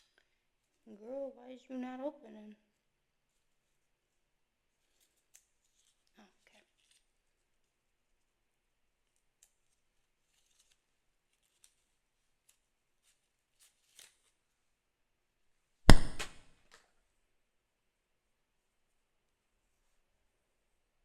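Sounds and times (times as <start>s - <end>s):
sharp knocks: 15.9s - 16.4s.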